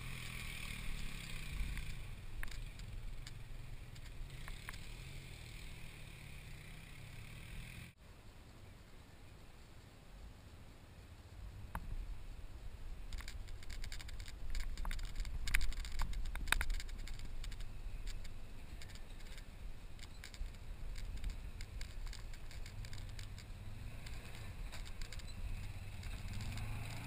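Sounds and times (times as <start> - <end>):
muffled atv engine rumble: 0.0 - 27.0
clicks and rattles: 1.7 - 4.8, 13.1 - 27.0.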